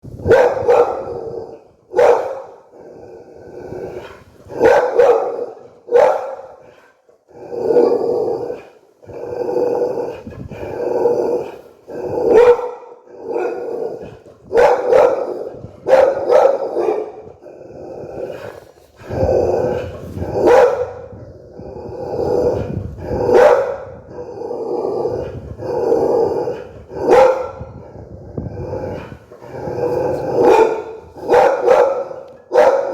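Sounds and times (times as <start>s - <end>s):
dog barking angrily: 0.2s - 21.2s, 21.8s - 27.9s, 28.7s - 32.9s.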